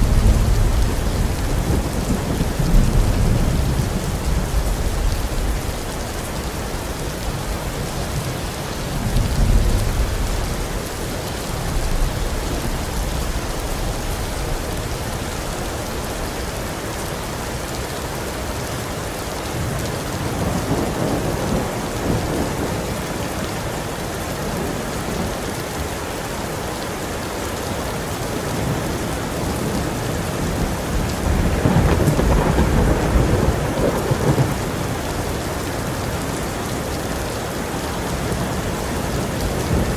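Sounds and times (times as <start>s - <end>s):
thunder rumbling: 0.0s - 8.3s, 28.4s - 36.4s, 38.0s - 39.9s
heavy rain falling: 0.0s - 39.9s.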